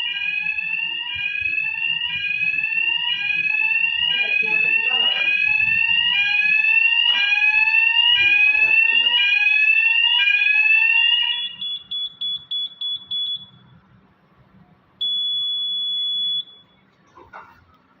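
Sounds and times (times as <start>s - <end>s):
fire alarm pulsed beeps: 0.0s - 13.8s, 15.0s - 16.9s
fire alarm rising sweep: 0.0s - 13.8s, 15.0s - 16.8s
fire alarm steady tone: 0.0s - 13.8s, 15.0s - 16.9s.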